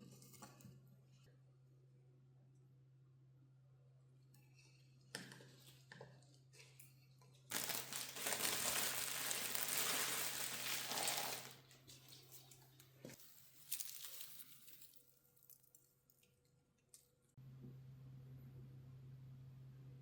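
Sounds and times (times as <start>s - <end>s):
packaging crinkling and rustling: 7.5s - 12.6s, 13.2s - 15.7s.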